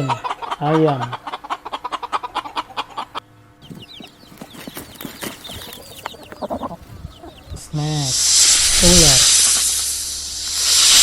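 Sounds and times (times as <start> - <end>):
chickens clucking: 0.0 - 8.1.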